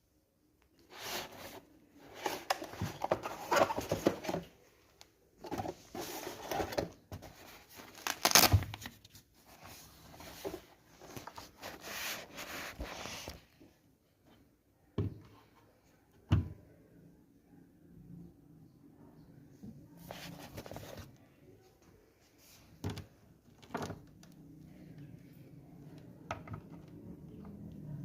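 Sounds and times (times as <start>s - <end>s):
rustling and handling noise: 0.7s - 14.5s, 19.9s - 25.9s.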